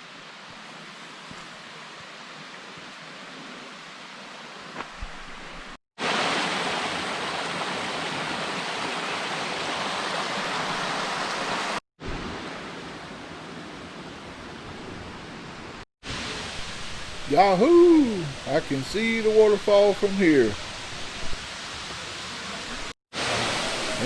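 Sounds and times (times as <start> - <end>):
waterfall rushing: 6.0 - 13.9, 16.0 - 24.0.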